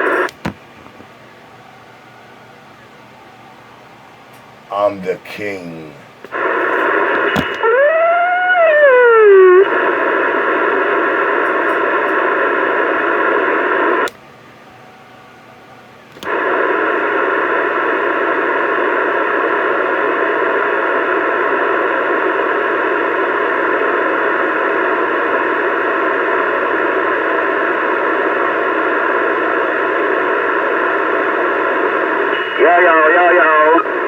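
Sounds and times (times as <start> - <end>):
radio static hiss: 0.0 - 0.5, 4.7 - 14.1, 16.2 - 34.0
radio click: 0.0 - 0.6, 6.2 - 8.0, 9.5 - 14.2, 16.1 - 19.6, 21.0 - 34.0.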